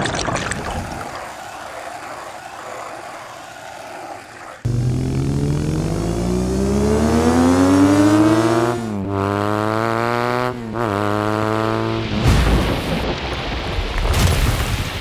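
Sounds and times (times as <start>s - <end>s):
car engine accelerating hard: 4.6s - 12.2s.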